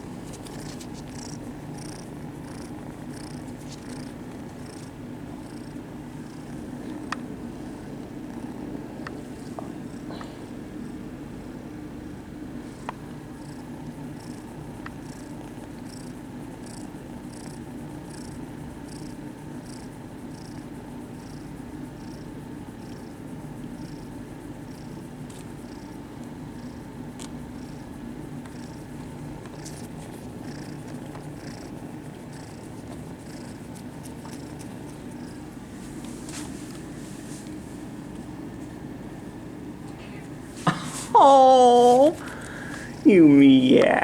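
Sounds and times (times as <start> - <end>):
kitten purring: 0.0 - 38.3, 41.1 - 44.0.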